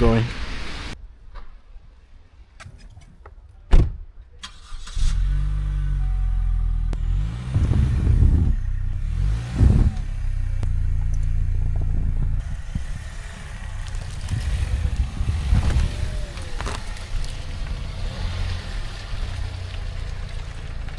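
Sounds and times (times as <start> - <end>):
car engine idling: 4.4 - 20.9.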